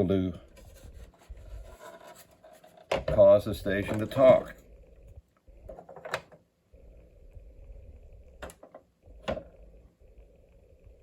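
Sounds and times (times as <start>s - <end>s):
faint rustling: 0.4s - 2.9s.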